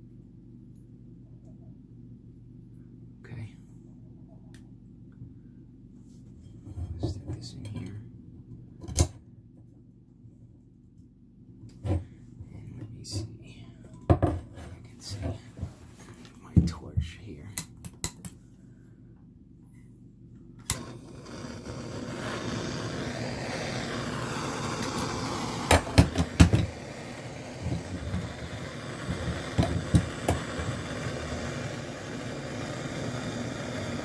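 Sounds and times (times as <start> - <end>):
gas torch hissing: 20.6 - 34.0
torch igniting click: 20.6 - 34.0.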